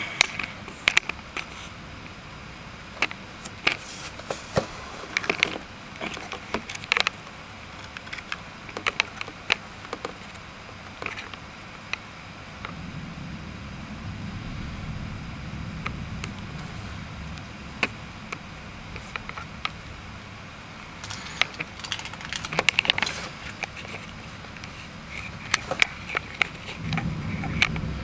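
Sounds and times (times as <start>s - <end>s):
steady hiss: 0.0s - 28.0s
low rumble: 12.2s - 22.5s, 23.2s - 28.0s
raindrops tapping hard surface: 15.7s - 28.0s.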